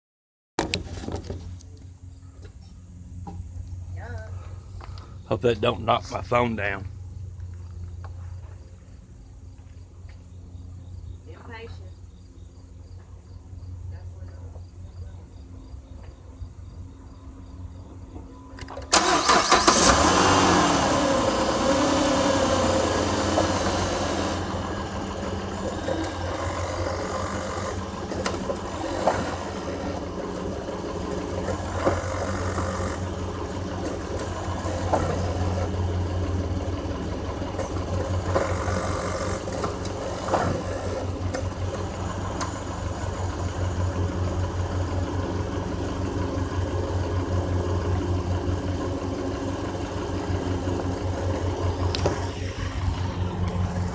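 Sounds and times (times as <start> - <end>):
crickets chirping: 1.2 - 19.8
car engine cranking and running: 15.9 - 53.9
engine knocks: 18.1 - 53.9.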